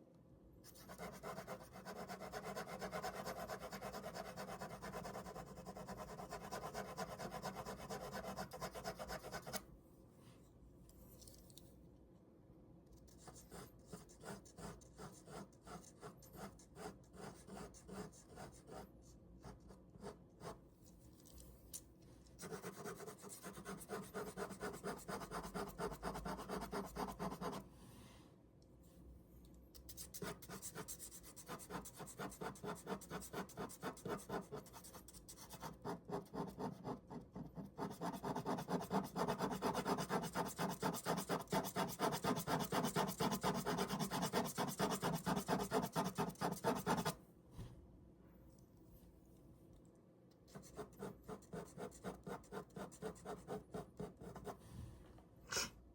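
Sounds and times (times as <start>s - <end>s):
pen scratching on paper: 0.7s - 9.6s, 13.1s - 18.8s, 19.4s - 20.6s, 22.4s - 27.6s, 29.9s - 47.2s, 50.5s - 54.6s.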